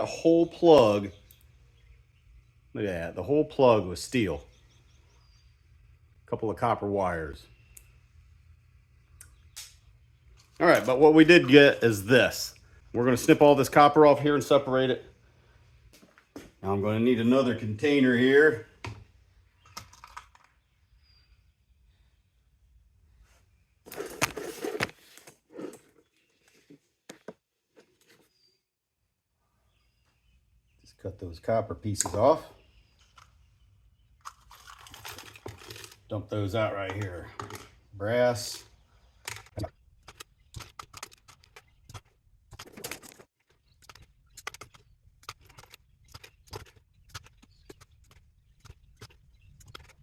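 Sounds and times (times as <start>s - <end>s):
plastic parts rattling: 34.2s - 36.1s, 36.9s - 37.8s.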